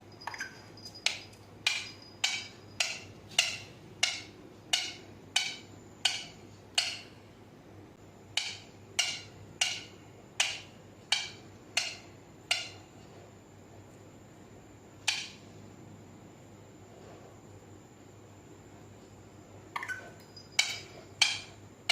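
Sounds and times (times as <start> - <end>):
parrot knocking: 0.2 - 7.1.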